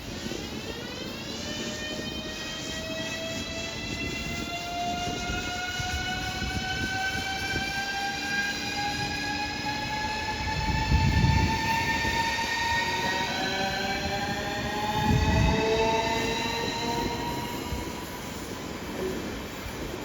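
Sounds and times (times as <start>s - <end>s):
train motors whining: 8.1s - 18.6s.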